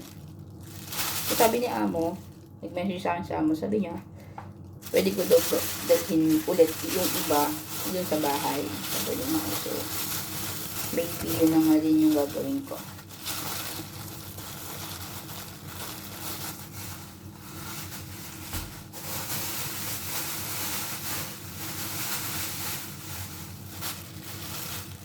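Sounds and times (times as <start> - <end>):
plastic bags crinkling: 0.0 - 3.0, 3.9 - 25.0
steady low hum: 0.0 - 19.0.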